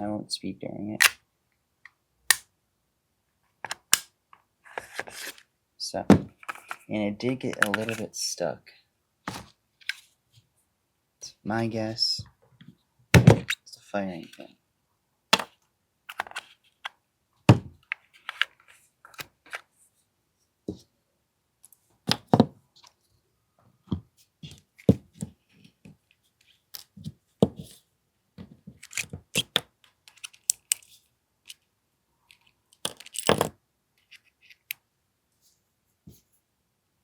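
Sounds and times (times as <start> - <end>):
plastic and metal gun parts clicking: 28.8 - 31.6, 32.3 - 34.8.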